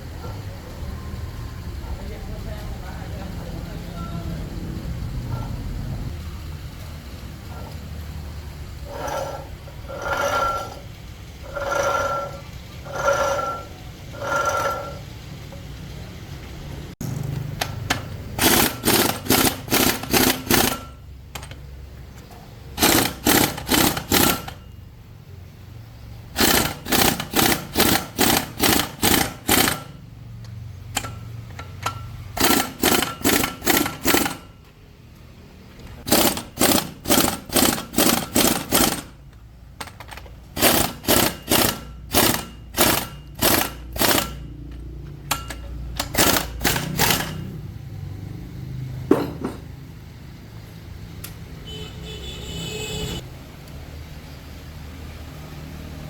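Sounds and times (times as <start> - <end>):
impact wrench pulses: 17.0 - 21.0, 22.7 - 24.7, 26.3 - 30.1, 30.9 - 34.6, 36.0 - 39.2, 40.5 - 47.6.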